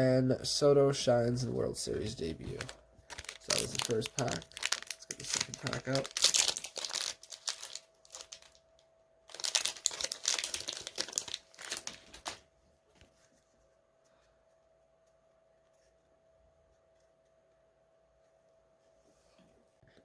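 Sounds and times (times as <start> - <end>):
wrapper tearing and crinkling: 2.4 - 8.6, 9.3 - 12.4.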